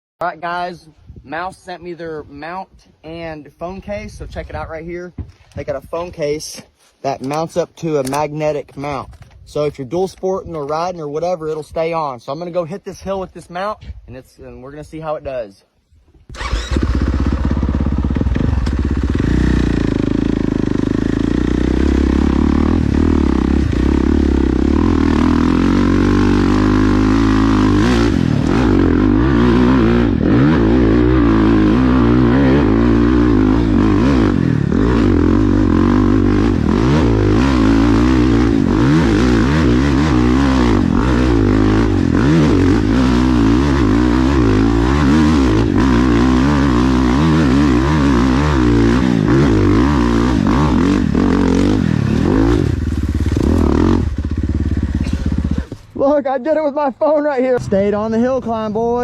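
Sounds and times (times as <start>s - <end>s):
dirt bike engine revving: 16.3s - 56.0s
bike knocking over rough ground: 52.9s - 53.8s.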